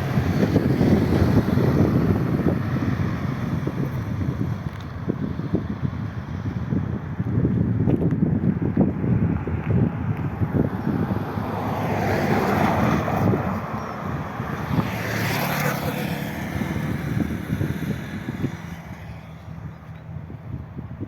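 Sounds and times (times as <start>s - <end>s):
vehicle passing close by: 0.0s - 7.0s, 8.6s - 19.7s
wind on the microphone: 0.0s - 21.0s.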